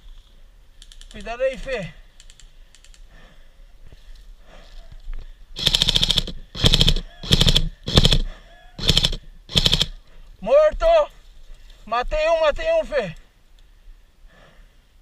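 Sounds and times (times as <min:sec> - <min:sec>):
airsoft rifle full-auto bursts: 0:05.6 - 0:10.0.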